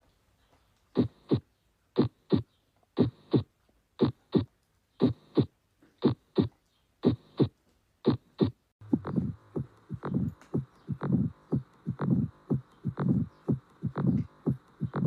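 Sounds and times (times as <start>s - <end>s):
heartbeat thumps: 1.0s - 7.5s, 8.1s - 15.0s.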